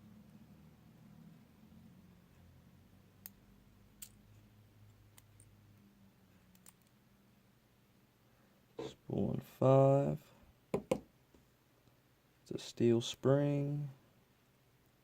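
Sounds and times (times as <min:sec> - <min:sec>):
faint metal clicks: 0:06.3 - 0:07.0.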